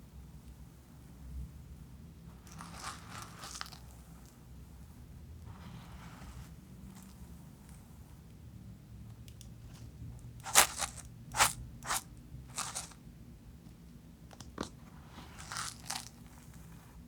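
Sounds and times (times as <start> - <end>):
knife crunching through dry soap: 10.4 - 13.0, 14.6 - 16.2.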